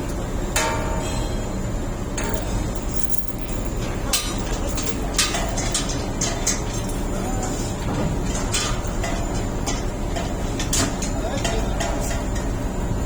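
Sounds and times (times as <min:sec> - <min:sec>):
bulldozer engine rumbling: 0:00.0 - 0:13.0
sharp metallic clinks: 0:02.2 - 0:07.6.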